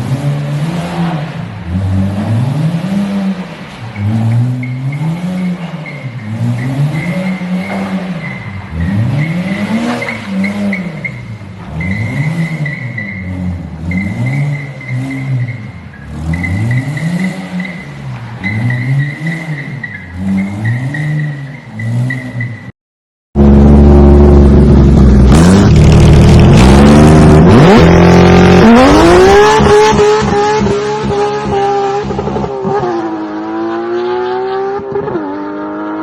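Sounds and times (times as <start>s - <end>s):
car engine revving: 23.4s - 36.0s.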